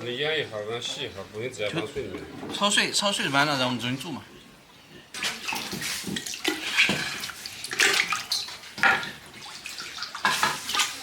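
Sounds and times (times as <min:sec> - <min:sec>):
water running and splashing: 0:05.1 - 0:11.0.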